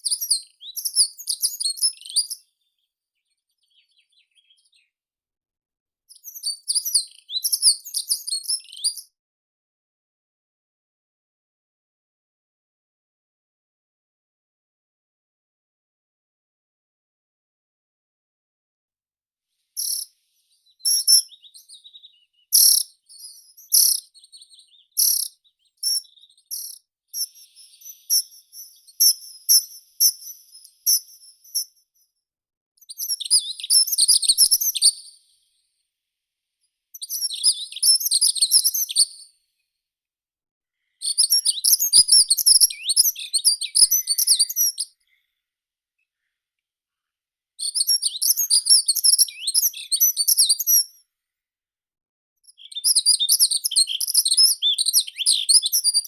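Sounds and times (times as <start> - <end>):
songbirds singing: 0.0 - 5.0, 6.2 - 9.0, 19.8 - 31.7, 32.8 - 35.0, 37.0 - 39.1, 40.8 - 45.4, 47.6 - 50.8, 52.5 - 56.0.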